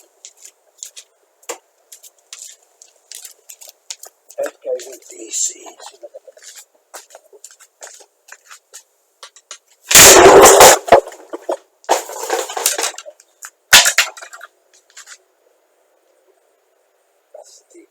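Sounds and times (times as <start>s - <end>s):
faint electrical crackling: 0.0s - 17.9s
loud bursts of coconut blowing apart: 9.9s - 11.2s.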